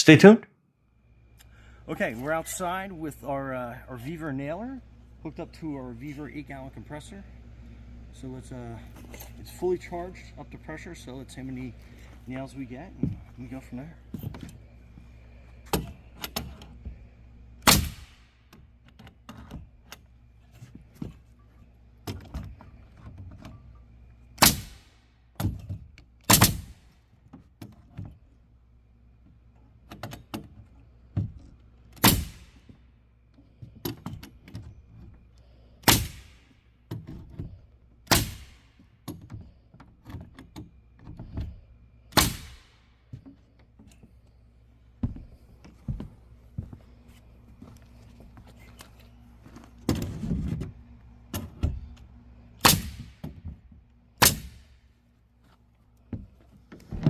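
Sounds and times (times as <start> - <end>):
pneumatic nailer striking: 17.6 - 18.5, 24.4 - 27.0, 32.0 - 32.7, 35.8 - 36.6, 38.0 - 38.9, 42.1 - 42.9, 52.6 - 53.4, 54.2 - 54.8.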